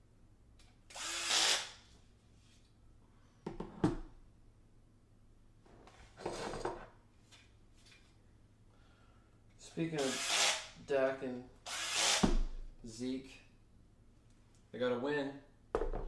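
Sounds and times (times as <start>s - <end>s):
electric drill driving screws: 0.9s - 1.8s, 10.0s - 10.8s, 11.7s - 12.4s.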